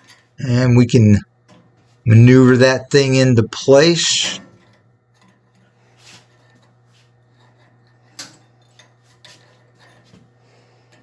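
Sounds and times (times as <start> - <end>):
steady low hum: 0.0 - 11.0
metal clicks and scrapes: 4.2 - 10.3.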